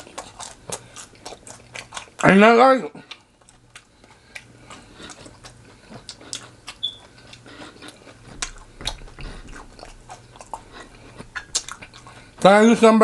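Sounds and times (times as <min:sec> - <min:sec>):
person chewing crunchy food: 0:00.0 - 0:02.4, 0:03.0 - 0:12.7
wet mouth clicks: 0:05.2 - 0:12.1.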